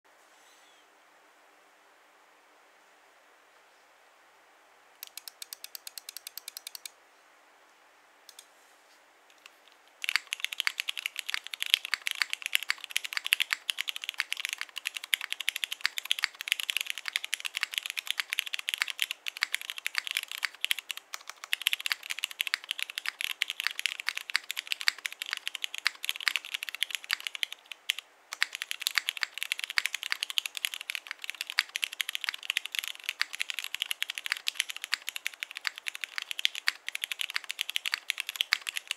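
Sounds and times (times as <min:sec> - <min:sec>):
evenly spaced clicks: 0:05.0 - 0:06.9, 0:09.3 - 0:38.9
fast typing on mechanical keyboard: 0:10.0 - 0:38.9.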